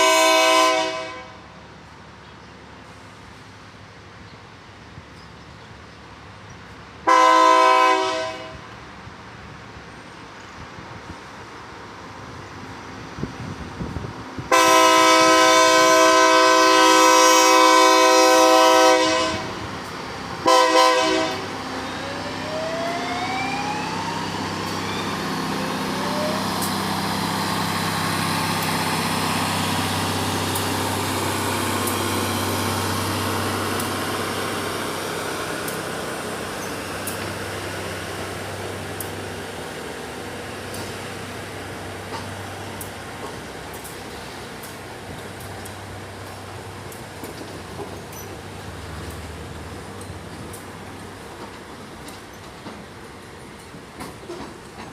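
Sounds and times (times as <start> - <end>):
train air horn blasts: 0.0 - 1.5, 7.1 - 8.6, 14.5 - 19.6, 20.4 - 21.5
diesel engines rumbling: 8.9 - 53.9
rising whines: 21.7 - 37.8.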